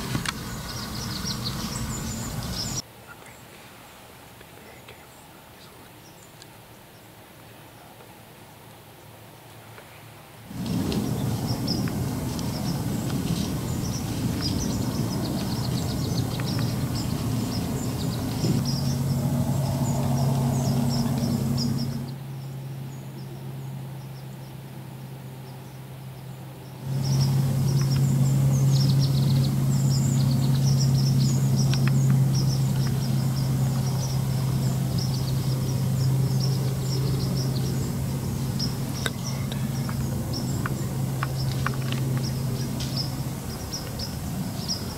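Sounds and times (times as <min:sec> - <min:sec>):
steady low hum: 0:00.0 - 0:02.8, 0:10.4 - 0:44.9
wind rumbling on microphone: 0:00.0 - 0:02.8, 0:10.5 - 0:22.2, 0:26.8 - 0:44.9
small birds chirping: 0:00.0 - 0:04.0, 0:04.6 - 0:07.2, 0:10.5 - 0:24.6, 0:25.4 - 0:44.9.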